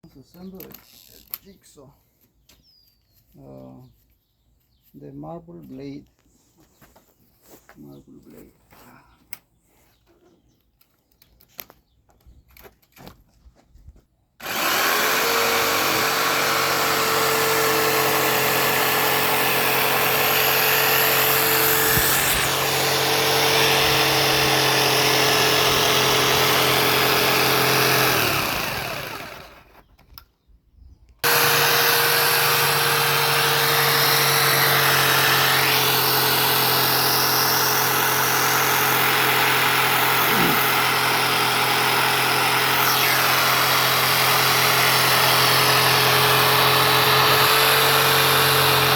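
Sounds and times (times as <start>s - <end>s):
jigsaw cutting stone: 14.4s - 29.8s, 31.2s - 48.9s.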